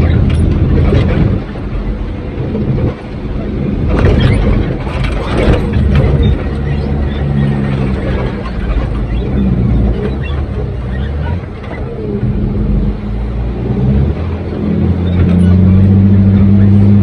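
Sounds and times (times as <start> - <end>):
metal rattling and clanking: 0.0 - 12.4
heavy engine running: 0.0 - 17.0.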